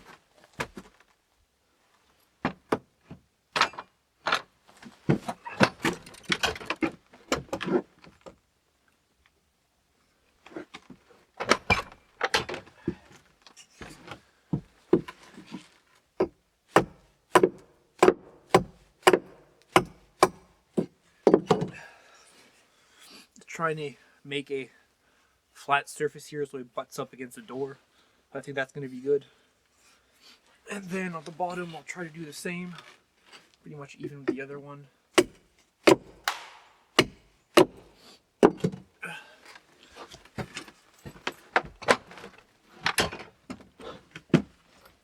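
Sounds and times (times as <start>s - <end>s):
axe chopping dry stick: 16.7s - 20.5s, 35.2s - 38.7s.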